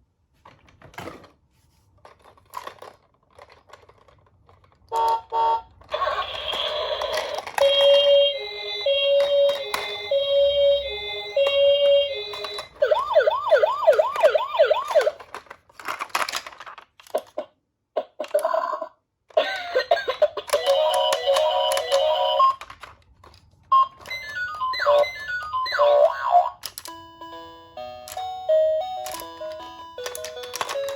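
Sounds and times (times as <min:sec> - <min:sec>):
two-tone hi-lo siren: 0:07.6 - 0:15.2
yelp siren: 0:07.8 - 0:15.2, 0:24.4 - 0:26.6.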